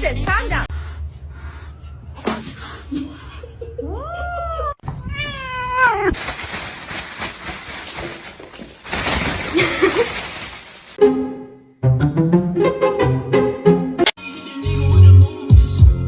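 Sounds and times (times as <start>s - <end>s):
cat meowing and yowling: 3.9s - 6.2s
noisy rustling: 6.1s - 11.0s.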